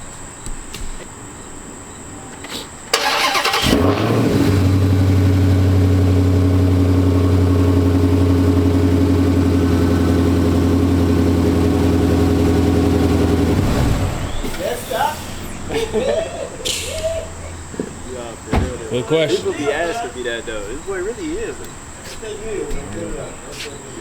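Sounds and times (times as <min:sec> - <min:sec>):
car engine starting and idling: 0:02.9 - 0:22.0.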